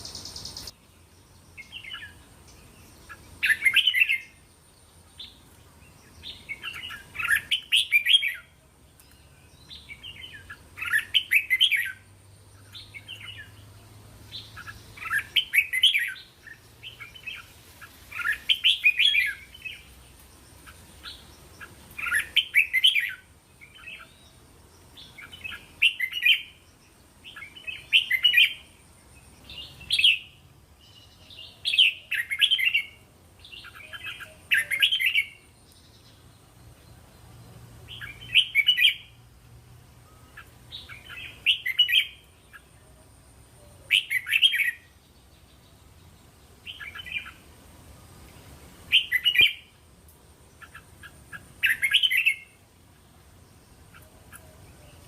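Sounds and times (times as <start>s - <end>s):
bird chatter notes: 0.0s - 12.0s.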